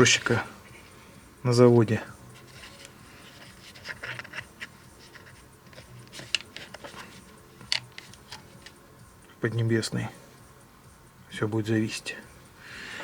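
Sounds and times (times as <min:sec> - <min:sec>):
light scraping on plastic: 0:02.4 - 0:08.7.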